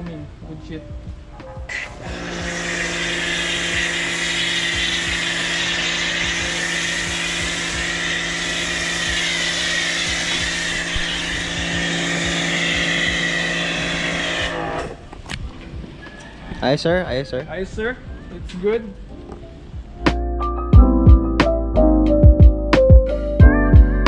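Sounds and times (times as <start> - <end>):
loud hiss of spray: 1.7 - 14.8
pressure washer motor hum: 1.7 - 15.0.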